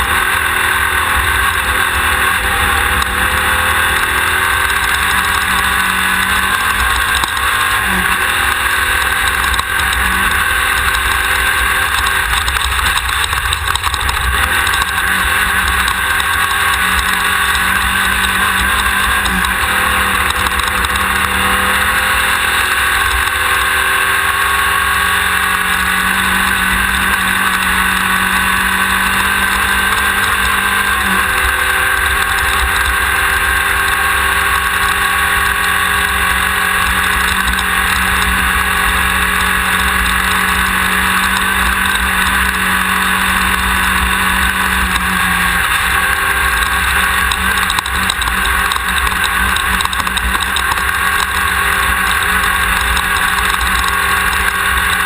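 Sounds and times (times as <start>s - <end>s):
loud ride noise: 0.0s - 24.3s
race car engine running hard: 0.0s - 55.0s.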